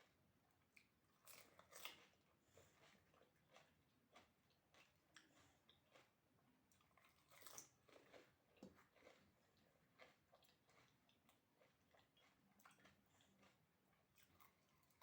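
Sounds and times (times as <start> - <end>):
chewing and crunching: 0.0 - 15.0.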